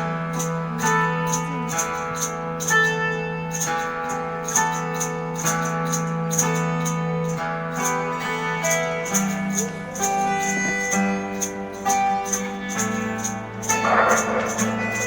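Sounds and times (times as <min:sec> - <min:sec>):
cymbal-like wash: 0:13.6 - 0:15.0
live band playing instrumental: 0:13.8 - 0:15.0.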